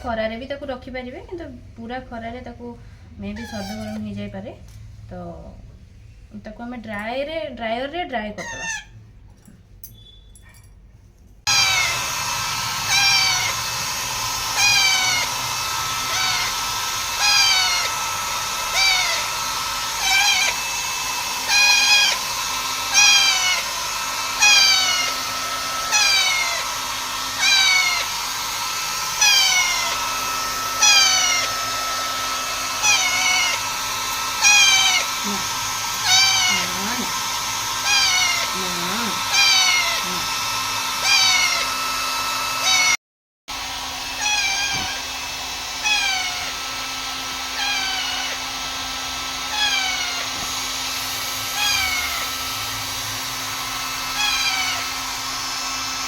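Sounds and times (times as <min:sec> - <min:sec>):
parrot squawking: 0:03.3 - 0:04.2, 0:08.4 - 0:09.1, 0:11.5 - 0:20.7, 0:21.4 - 0:28.4, 0:29.1 - 0:31.8, 0:32.4 - 0:40.3, 0:41.0 - 0:41.8, 0:42.6 - 0:43.0, 0:44.0 - 0:46.8, 0:47.4 - 0:48.6, 0:49.4 - 0:55.4
hair dryer running: 0:03.4 - 0:04.1, 0:11.4 - 0:56.0.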